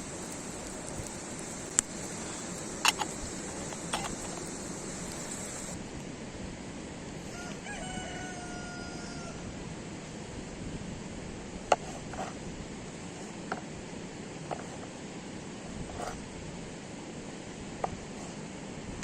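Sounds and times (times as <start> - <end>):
sharp clicks: 0.0 - 5.8
steady background hiss: 0.0 - 19.0
rooster crowing: 7.2 - 9.5.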